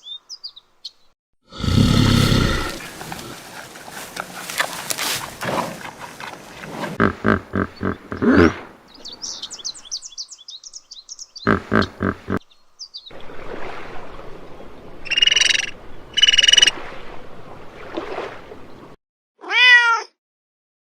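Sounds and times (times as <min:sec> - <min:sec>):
small birds chirping: 0:00.0 - 0:01.1, 0:07.5 - 0:08.3, 0:08.9 - 0:13.1
tiger roaring: 0:01.5 - 0:08.6.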